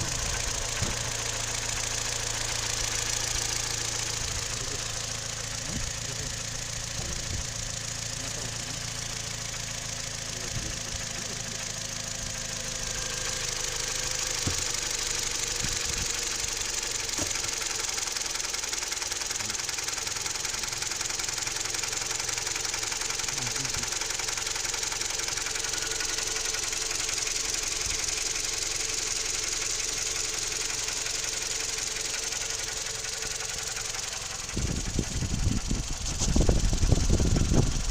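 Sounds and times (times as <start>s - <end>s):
car engine knocking: 0.0s - 37.9s
uneven low rumbling: 34.2s - 37.9s.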